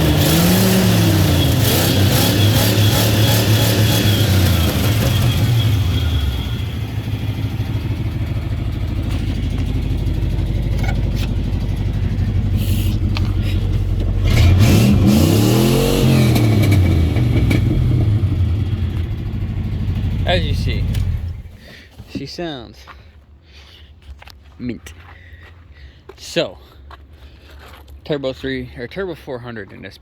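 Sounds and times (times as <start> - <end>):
truck engine idling and revving: 0.0 - 21.8.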